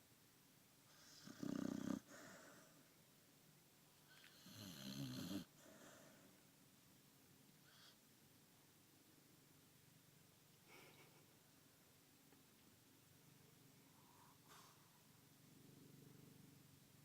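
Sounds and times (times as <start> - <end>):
dog snoring: 0.9 - 2.8, 4.1 - 6.3.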